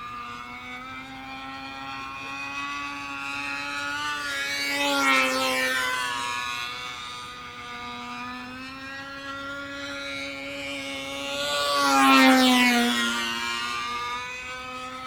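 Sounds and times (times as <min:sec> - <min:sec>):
toy electric motor buzzing: 0:00.0 - 0:15.0.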